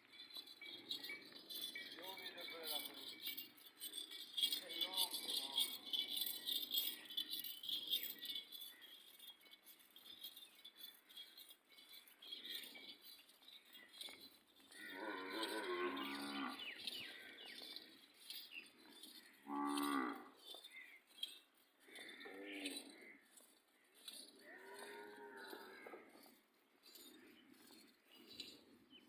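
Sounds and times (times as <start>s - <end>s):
bells jingling: 0.0s - 29.0s
cattle mooing: 14.8s - 16.6s, 19.4s - 20.3s, 24.6s - 25.8s.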